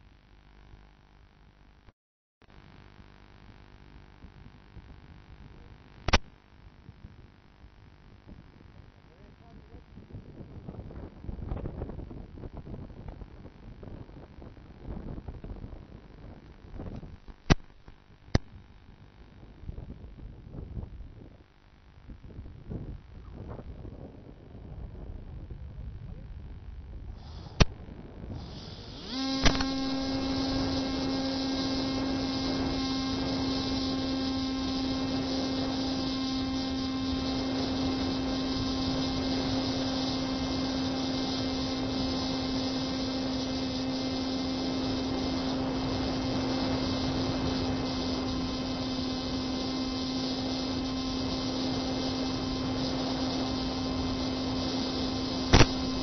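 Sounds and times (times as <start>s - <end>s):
steady hum with hiss: 0.0s - 56.0s
sharp clicks: 6.0s - 6.4s, 16.9s - 18.5s, 27.5s - 27.8s, 28.5s - 29.9s, 55.5s - 56.0s.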